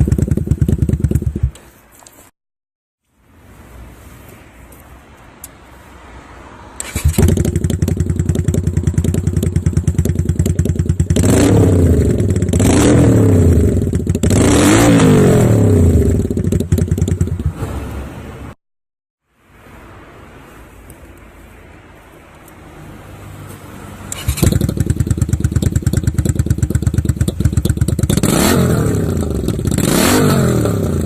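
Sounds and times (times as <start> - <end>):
motorcycle engine idling and revving: 0.0 - 1.7, 6.7 - 18.6, 22.4 - 31.0.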